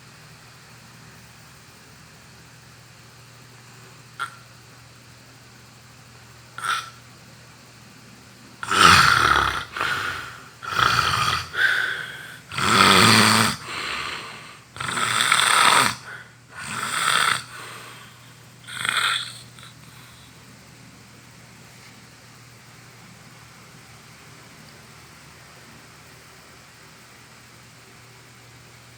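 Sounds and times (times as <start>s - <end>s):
person snoring loudly: 4.2s - 4.4s, 6.6s - 7.0s, 8.6s - 20.3s.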